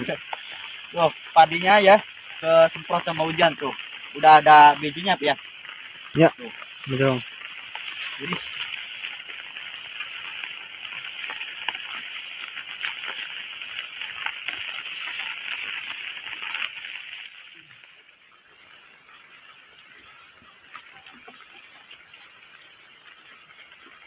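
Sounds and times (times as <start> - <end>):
heavy rain pattering: 0.0 - 24.0
high-pitched insect drone: 6.1 - 24.0.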